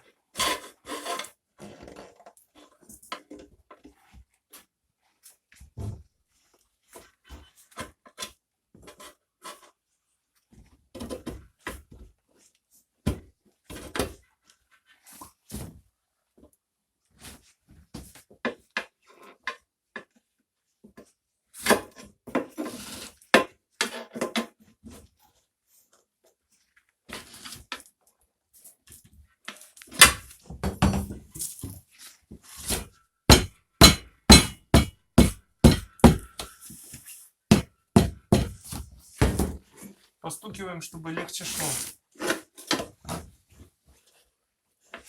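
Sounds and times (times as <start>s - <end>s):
hammer knocking on wheel rim: 33.3s - 36.3s, 37.5s - 38.6s.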